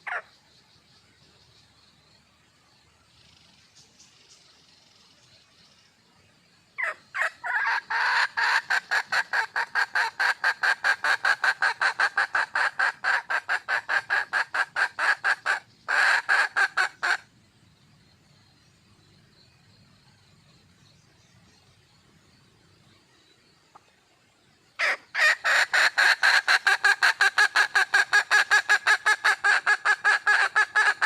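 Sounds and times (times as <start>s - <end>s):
junglefowl hen clucking: 0.0s - 0.4s, 6.8s - 17.3s, 24.8s - 31.0s.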